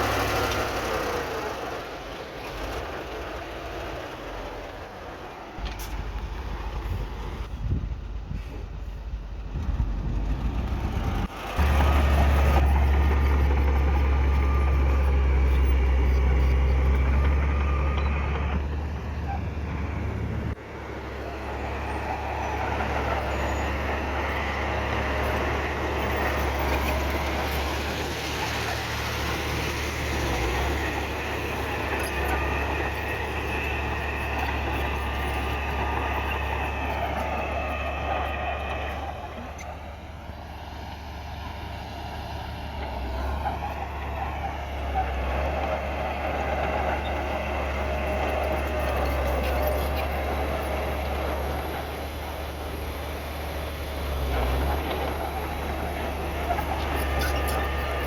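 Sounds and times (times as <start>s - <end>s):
heavy diesel machinery droning: 0.0s - 58.0s.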